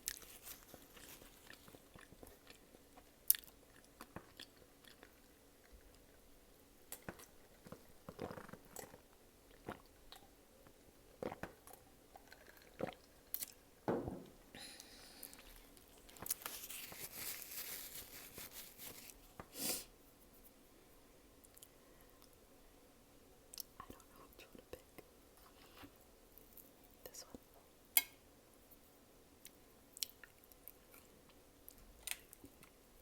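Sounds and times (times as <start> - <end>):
person chewing crunchy food: 0.0 - 6.2.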